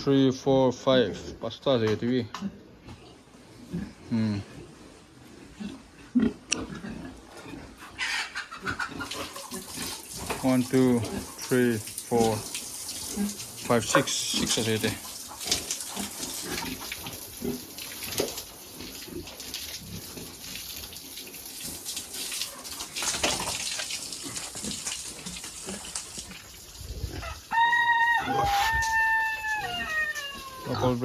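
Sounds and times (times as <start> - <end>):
rooster crowing: 27.2 - 30.7.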